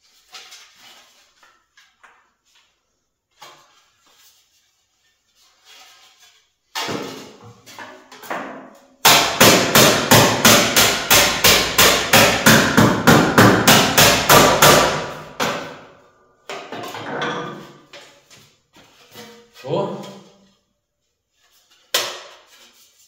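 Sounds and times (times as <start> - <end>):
hammer striking sheet metal: 8.4 - 17.7.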